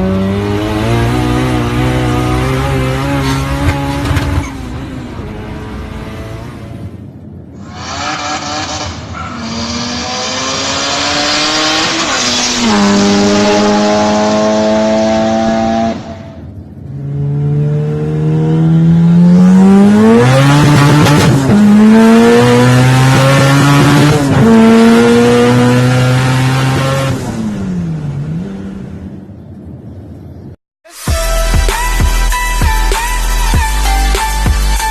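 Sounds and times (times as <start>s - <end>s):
car engine accelerating hard: 0.0s - 6.9s, 7.8s - 16.2s, 16.9s - 28.9s.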